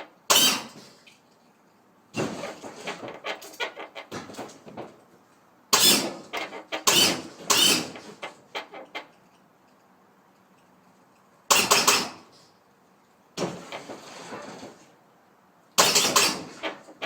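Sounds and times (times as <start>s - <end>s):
hydraulic hissing bursts: 11.5s - 12.2s.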